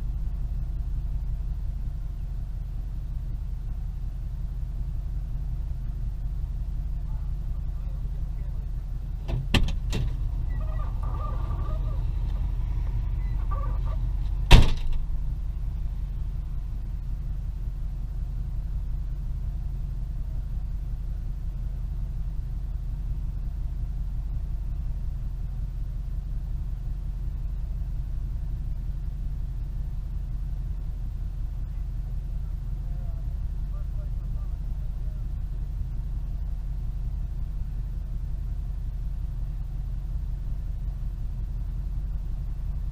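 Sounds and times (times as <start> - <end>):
car engine low rumble: 0.0 - 42.9
loud sharp knock: 14.5 - 15.0.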